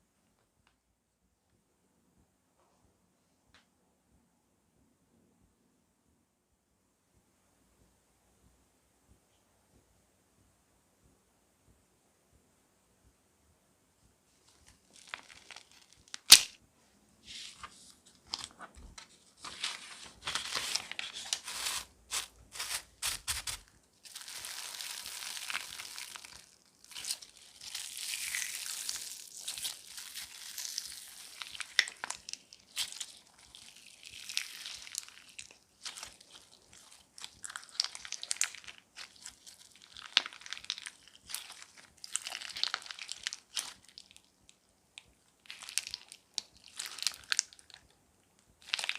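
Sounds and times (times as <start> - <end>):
crunchy slime crackling and popping: 14.8 - 16.6, 22.1 - 48.0, 48.6 - 48.9.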